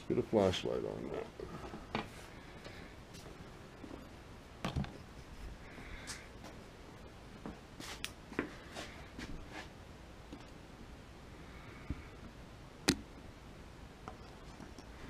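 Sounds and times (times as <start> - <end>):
light clicks and knocks of tools: 14.1 - 15.0.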